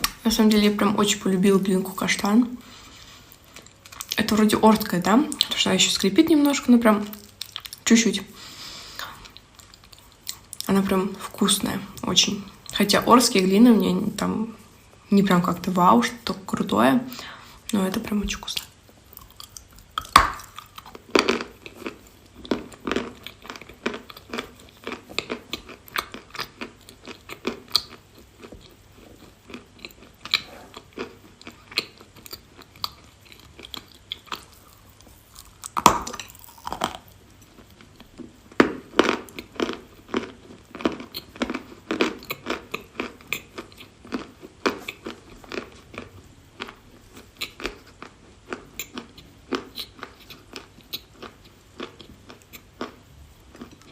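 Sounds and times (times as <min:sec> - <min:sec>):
person chewing crunchy clay: 0:02.8 - 0:04.2, 0:08.5 - 0:10.7, 0:18.5 - 0:53.9.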